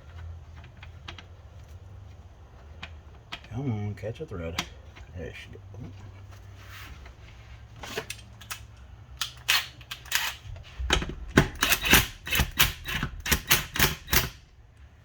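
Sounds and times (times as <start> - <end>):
ratchet wrench clicking: 11.6 - 14.4.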